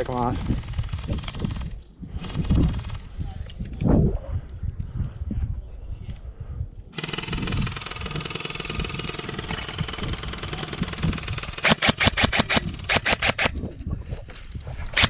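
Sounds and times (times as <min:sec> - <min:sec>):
motor and gearbox whir: 0:07.0 - 0:13.5
sharp rifle shots: 0:09.6 - 0:13.6.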